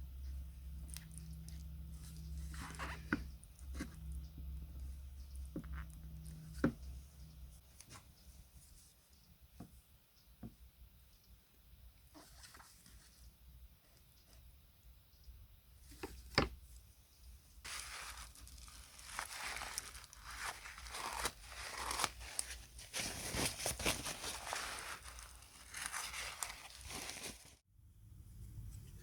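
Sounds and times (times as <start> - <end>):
scraping and rustling strokes: 0.9 - 4.2, 17.6 - 27.6.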